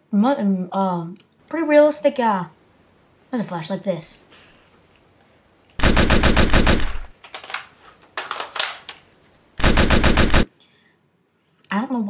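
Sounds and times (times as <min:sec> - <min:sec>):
machine-gun fire bursts: 0:05.8 - 0:07.1, 0:09.6 - 0:10.5.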